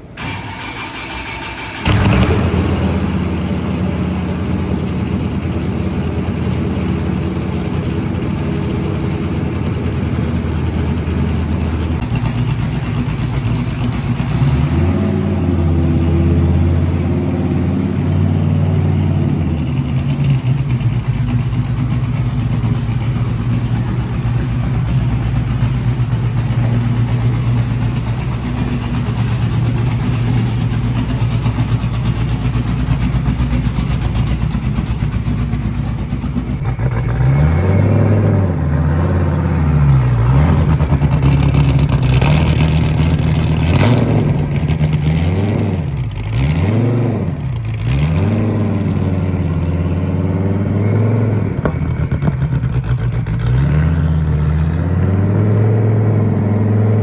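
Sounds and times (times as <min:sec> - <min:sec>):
car engine idling and revving: 0:00.0 - 0:57.0.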